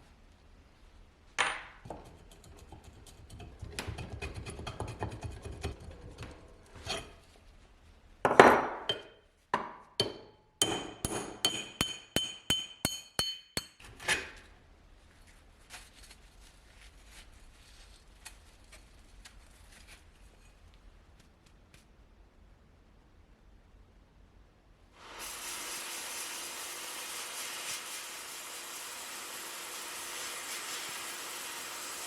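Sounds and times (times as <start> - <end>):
hammer striking metal: 10.0 - 13.8.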